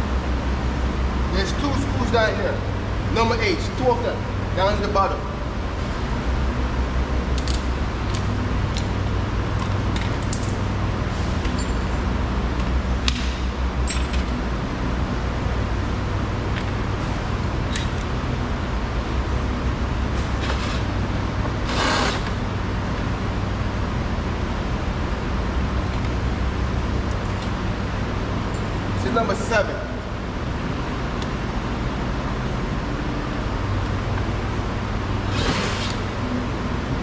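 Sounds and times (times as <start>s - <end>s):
steady low hum: 0.0s - 37.0s
short rasp: 35.3s - 36.0s.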